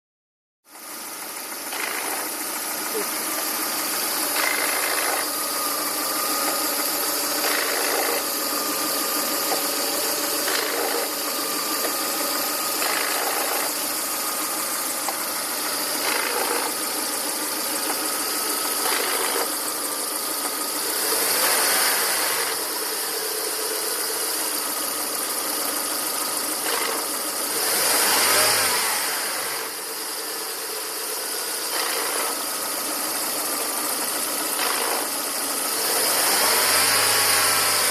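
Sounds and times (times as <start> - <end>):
car engine idling with rasp: 0.7 - 37.9.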